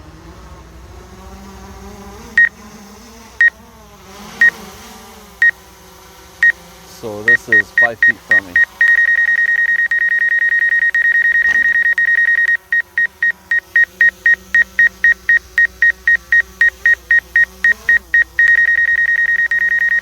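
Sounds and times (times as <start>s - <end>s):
drone hum hovering: 0.0s - 20.0s
high electronic warning beep: 7.3s - 20.0s.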